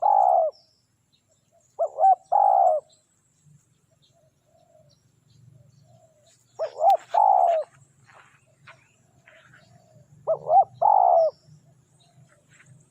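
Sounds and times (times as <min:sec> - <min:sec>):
dove cooing: 0:00.0 - 0:00.6, 0:01.8 - 0:02.9, 0:05.6 - 0:12.6.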